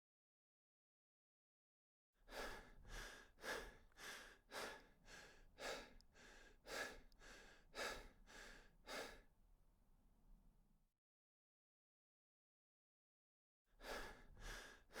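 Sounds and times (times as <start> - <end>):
rapid rhythmic breathing: 2.3 - 9.3.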